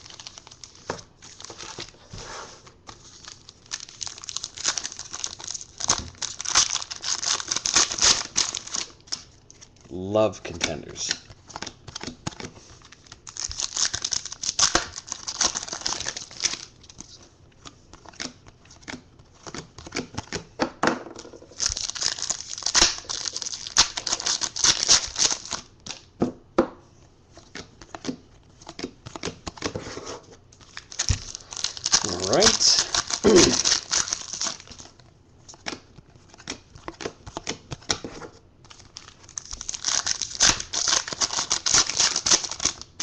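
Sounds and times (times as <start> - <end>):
plastic wrappers crinkling and tearing: 0.0 - 2.0, 2.8 - 17.2, 21.5 - 26.0, 30.6 - 38.0, 38.6 - 43.0.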